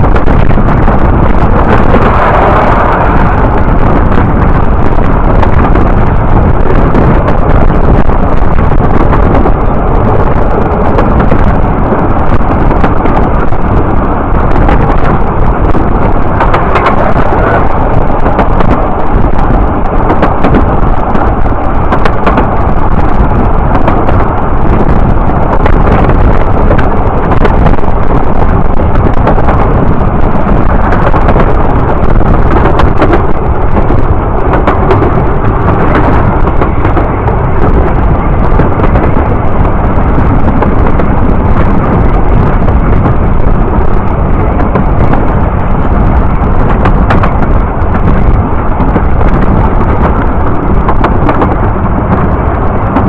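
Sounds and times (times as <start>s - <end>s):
loud rumbling noise: 0.0s - 53.0s
wind buffeting microphone: 0.0s - 53.0s.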